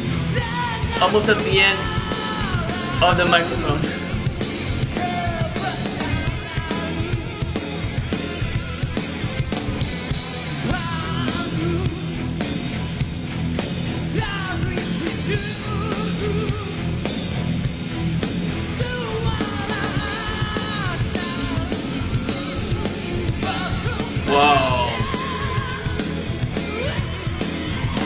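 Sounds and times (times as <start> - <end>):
drums: 0.0 - 28.0
electric guitars: 0.0 - 28.0
rock band playing: 0.0 - 28.0
man singing: 0.2 - 4.0, 5.0 - 7.6, 10.6 - 12.2, 14.1 - 16.9, 18.8 - 26.0.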